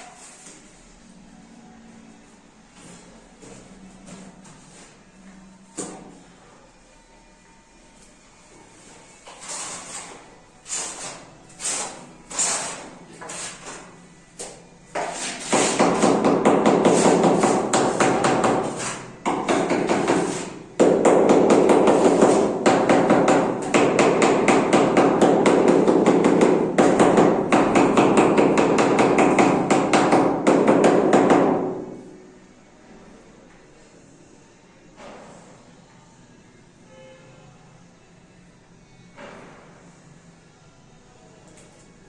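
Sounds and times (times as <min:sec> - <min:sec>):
hammering on plaster: 0:14.4 - 0:32.0.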